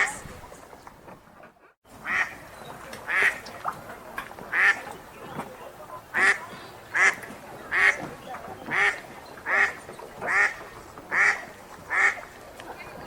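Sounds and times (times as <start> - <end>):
duck quacking loudly: 2.0 - 2.4, 8.7 - 12.2.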